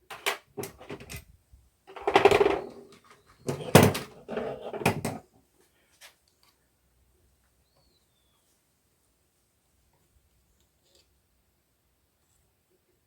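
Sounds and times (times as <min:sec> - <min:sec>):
metal tools knocking and clattering: 0:00.1 - 0:01.2.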